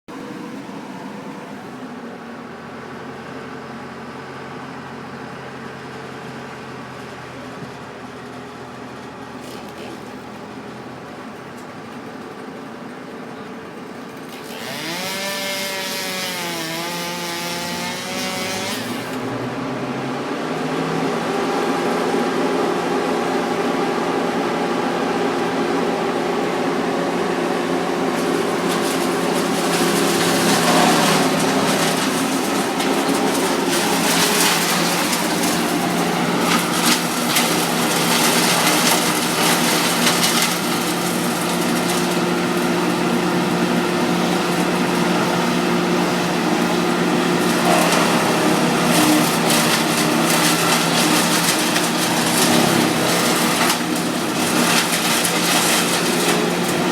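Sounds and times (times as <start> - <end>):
chainsaw cutting wood: 9.4 - 10.4, 14.3 - 19.4, 28.1 - 56.9.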